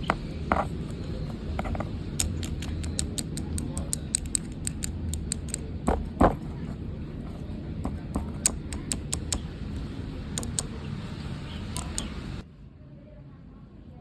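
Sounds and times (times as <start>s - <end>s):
low steady rumble: 0.0s - 14.0s
finger clicks and taps on board: 1.6s - 6.4s, 7.9s - 9.4s, 10.4s - 10.7s, 11.8s - 12.1s.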